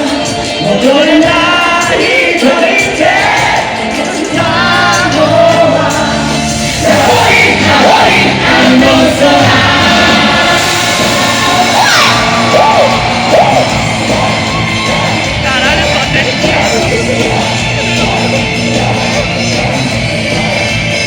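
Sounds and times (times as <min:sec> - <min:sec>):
lead singer singing: 0:00.0 - 0:21.0
loud live rock music: 0:00.0 - 0:21.0.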